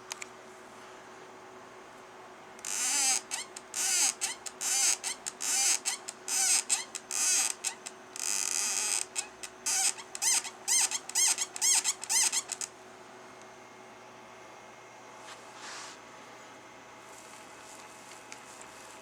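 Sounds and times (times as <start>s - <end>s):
rc buggy squeaking: 2.7s - 12.7s.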